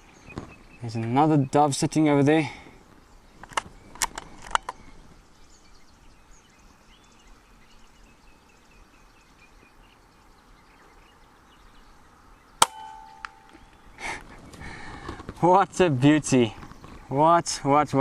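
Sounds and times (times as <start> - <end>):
faint bird chirps: 0.0 - 14.8
air rifle firing: 12.6 - 13.5.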